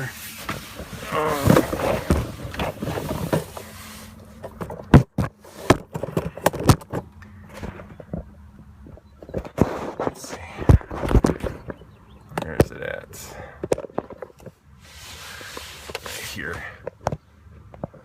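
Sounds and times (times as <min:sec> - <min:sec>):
rubbing and rustling: 0:00.0 - 0:07.0, 0:09.2 - 0:11.8, 0:14.0 - 0:16.6.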